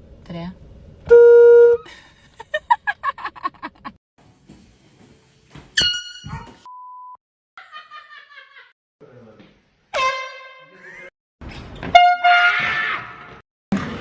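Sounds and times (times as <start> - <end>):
short steady beep: 1.1 - 1.8
air horn blast: 10.0 - 10.7.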